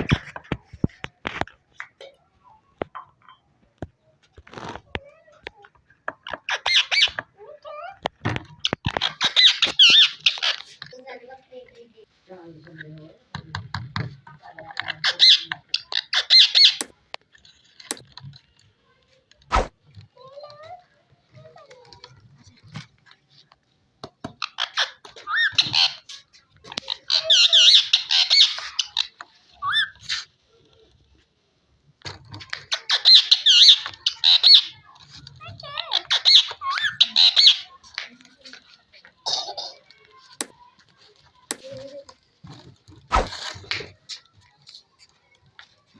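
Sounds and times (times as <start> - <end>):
parakeet squawking: 9.0 - 10.6, 27.0 - 29.9, 35.6 - 37.8
sharp thump: 19.5 - 19.7, 43.1 - 43.4.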